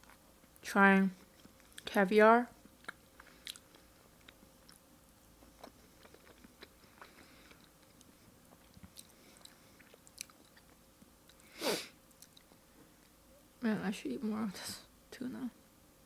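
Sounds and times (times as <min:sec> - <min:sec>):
wet chewing: 0:02.6 - 0:11.5.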